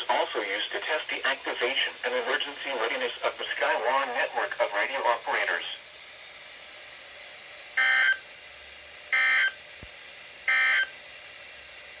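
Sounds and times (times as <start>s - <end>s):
faint radio hiss: 0.0s - 5.8s.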